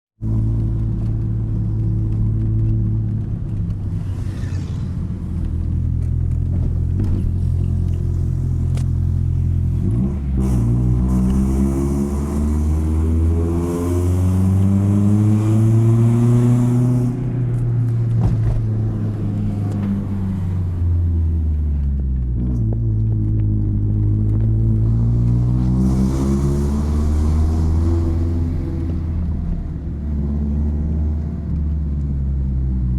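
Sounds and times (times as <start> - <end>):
car engine idling and revving: 0.2 - 32.9.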